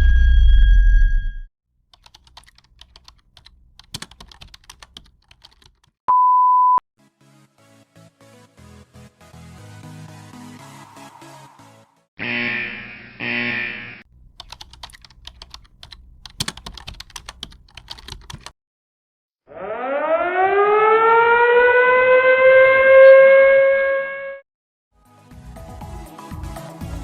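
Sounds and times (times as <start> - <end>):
rapid keyboard-like clicking: 1.9 - 6.0, 14.1 - 18.5
loud rising tone: 10.4 - 12.9.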